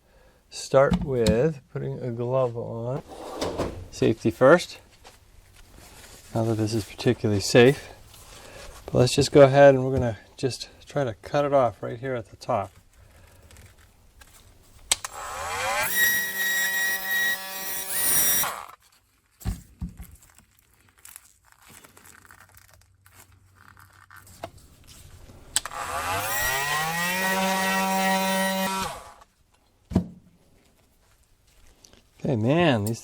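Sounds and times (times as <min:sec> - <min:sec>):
oscillating multi-tool cutting plastic: 0:14.9 - 0:18.8, 0:25.5 - 0:29.2.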